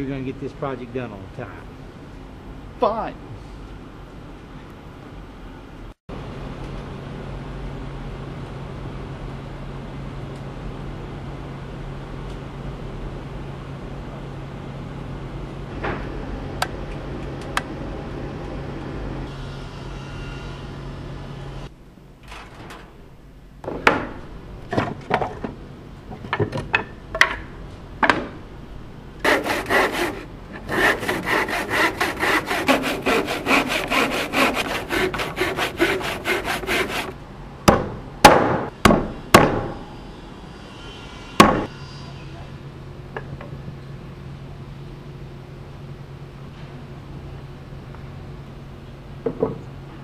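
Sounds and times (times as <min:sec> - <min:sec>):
hand saw cutting wood: 0:29.2 - 0:37.2.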